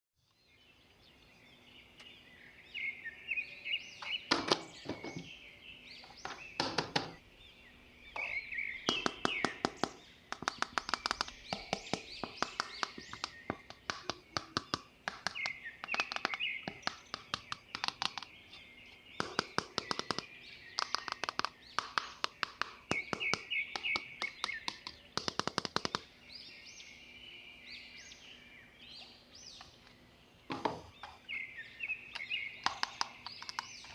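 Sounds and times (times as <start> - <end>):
birds chirping: 0.2 - 33.9
rapid sharp clicks and taps: 8.9 - 18.4, 19.2 - 26.1, 32.2 - 33.9.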